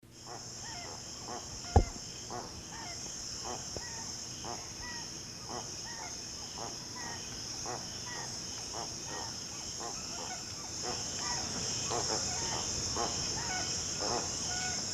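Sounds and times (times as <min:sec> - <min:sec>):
high chorus of insects: 0:00.1 - 0:14.9
sharp knock: 0:01.8 - 0:02.0.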